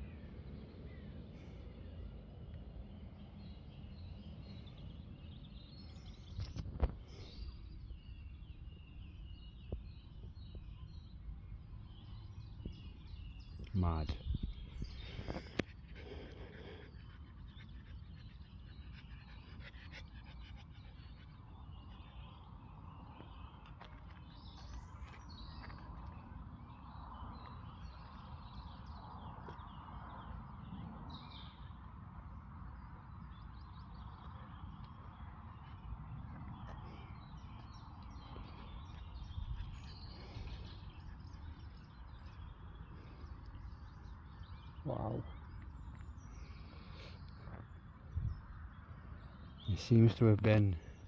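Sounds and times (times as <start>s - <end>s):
faint bird chirps: 33.1s - 51.0s.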